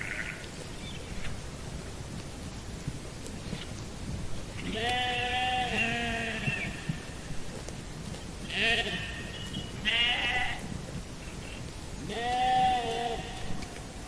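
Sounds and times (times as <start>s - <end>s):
sheep bleating: 0.0s - 0.4s, 4.6s - 7.2s, 8.5s - 10.7s, 12.0s - 13.8s.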